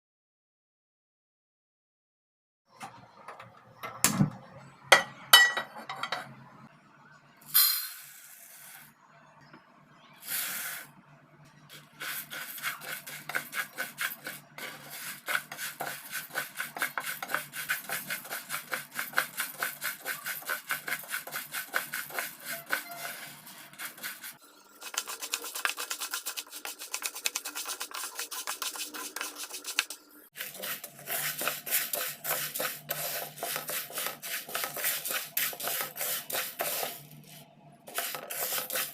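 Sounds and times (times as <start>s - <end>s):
utensils knocking and clinking: 4.9s - 6.3s
spatula scraping metal pan: 11.7s - 37.2s, 37.9s - 38.9s.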